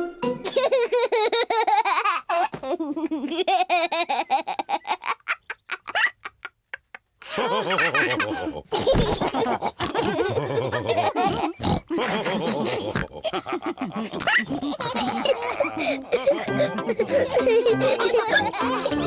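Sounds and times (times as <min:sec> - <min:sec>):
voices laughing: 0:00.5 - 0:19.0
cartoon pigs snorting: 0:07.8 - 0:19.0.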